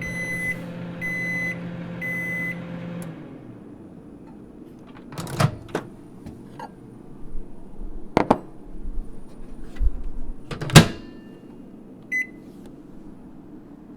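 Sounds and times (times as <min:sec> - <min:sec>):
short keypad beep: 0:00.0 - 0:02.6
microwave door latch clicks: 0:10.5 - 0:11.2
microwave door thump: 0:10.5 - 0:11.2.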